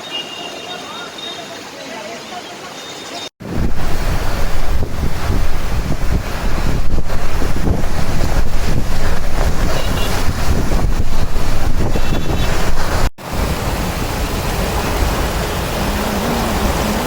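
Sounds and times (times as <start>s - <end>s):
heavy rain: 0.0s - 17.0s
wind buffeting microphone: 3.4s - 17.0s.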